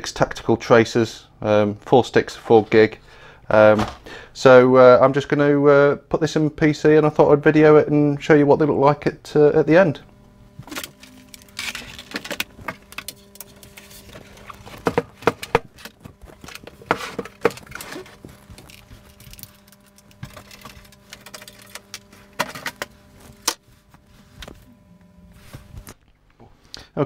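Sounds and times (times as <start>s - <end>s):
faint steady hum: 0.0s - 27.0s
computer case parts clicking: 18.7s - 23.6s.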